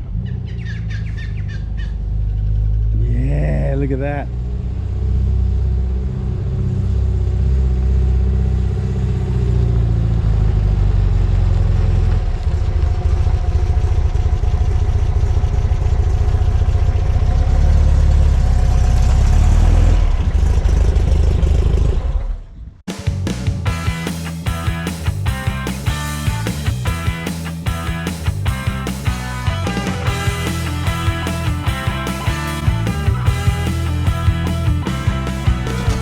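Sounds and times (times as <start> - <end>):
bus engine rumbling: 0.0 - 22.9, 23.6 - 36.0
music: 22.9 - 36.0.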